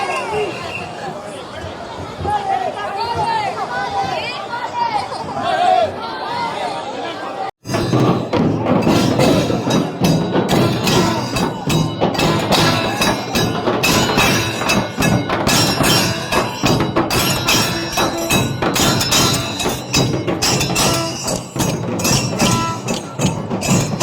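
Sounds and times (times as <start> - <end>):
drums struck quickly: 7.6 - 24.0
percussion-led music: 7.6 - 24.0.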